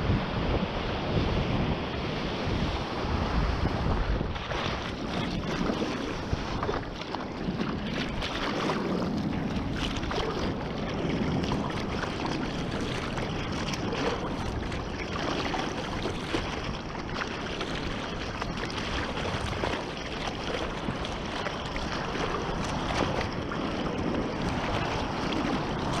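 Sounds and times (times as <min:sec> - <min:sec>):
ocean surf rushing: 0:00.0 - 0:06.6
wind buffeting microphone: 0:00.0 - 0:26.0.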